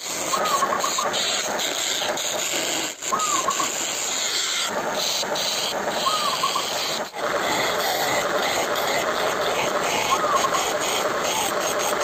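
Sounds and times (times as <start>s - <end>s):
chisel rasping on spinning wood: 0.0s - 12.0s
wood lathe motor running: 0.0s - 12.0s.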